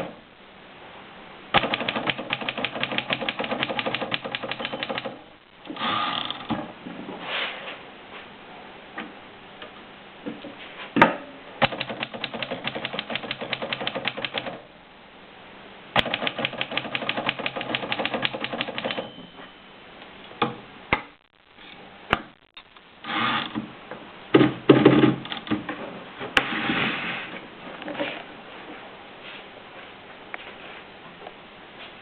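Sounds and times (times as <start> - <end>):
typewriter key strikes: 1.6 - 5.2, 11.6 - 14.6, 16.0 - 19.1
typewriter bell ring: 1.8 - 5.1, 16.2 - 19.4.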